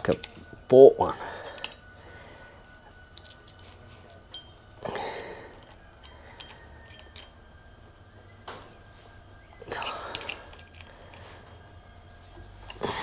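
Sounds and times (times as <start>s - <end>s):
light clicks of small parts: 0.0s - 0.5s, 2.9s - 4.4s, 5.5s - 7.4s, 9.6s - 12.9s
rustle of small parts: 1.4s - 4.5s, 8.6s - 13.0s.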